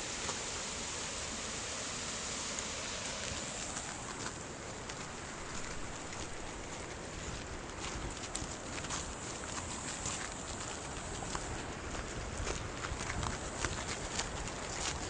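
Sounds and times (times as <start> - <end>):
river water rushing: 0.0 - 6.6.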